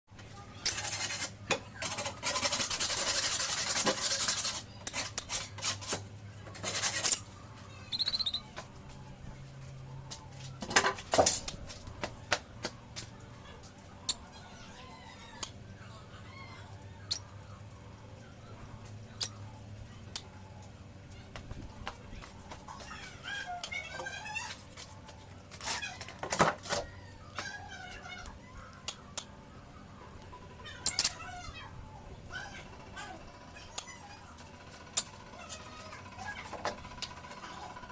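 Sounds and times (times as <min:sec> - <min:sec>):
rustling or scraping: 0:00.7 - 0:07.4
faint bird chirps: 0:07.7 - 0:08.5.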